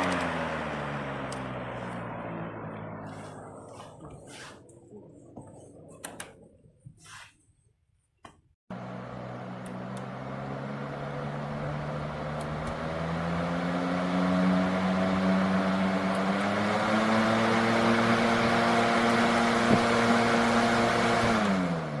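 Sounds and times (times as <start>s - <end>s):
box fan air rush and motor hum: 8.7s - 22.0s.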